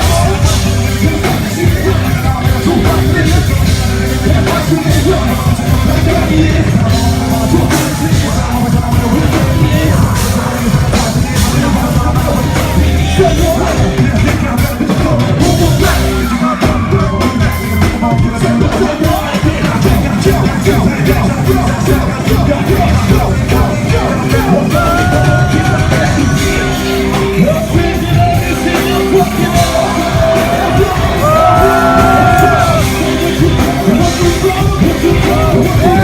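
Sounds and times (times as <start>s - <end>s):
live rock and hip hop music: 0.0s - 36.0s
person singing and yelling: 0.0s - 36.0s.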